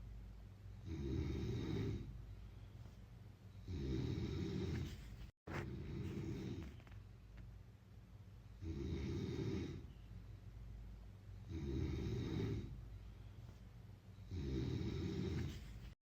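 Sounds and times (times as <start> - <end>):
quiet breathing: 0.7 - 7.0, 8.5 - 16.0
person snoring: 0.8 - 2.2, 3.6 - 6.9, 8.6 - 9.9, 11.4 - 12.8, 14.2 - 16.0.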